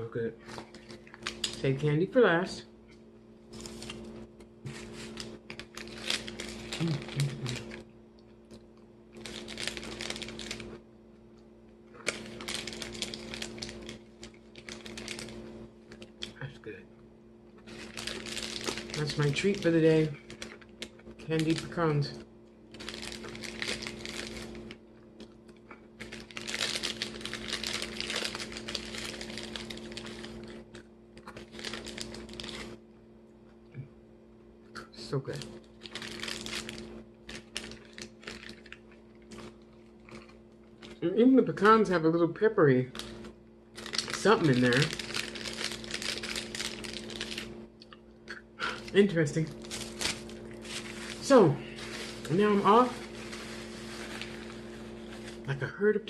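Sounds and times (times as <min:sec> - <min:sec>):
faint steady hum: 0:00.0 - 0:56.0
crunchy nuts being chewed: 0:05.2 - 0:10.8, 0:22.7 - 0:32.8, 0:35.5 - 0:41.0.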